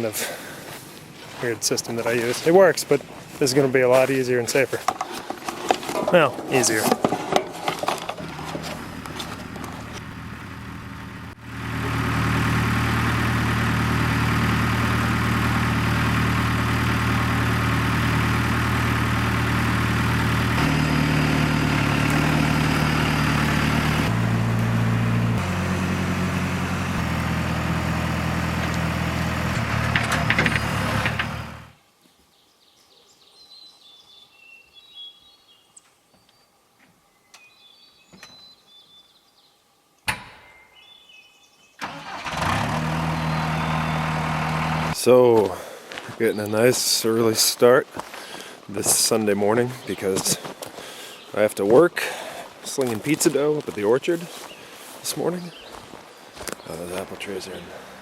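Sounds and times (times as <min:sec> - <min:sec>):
tractor diesel engine running: 0:06.0 - 0:31.8, 0:41.8 - 0:58.0.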